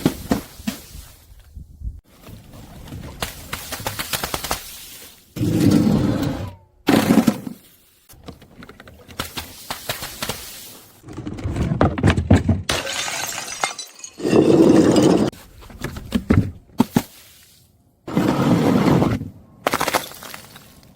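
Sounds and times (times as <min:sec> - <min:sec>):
glass bottles smashing: 0:12.7 - 0:15.3
tinkle of breaking glass shards: 0:12.9 - 0:14.3.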